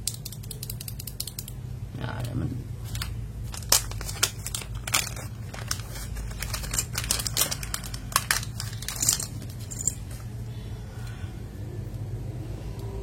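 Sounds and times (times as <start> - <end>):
plastic crinkling: 2.8 - 10.2.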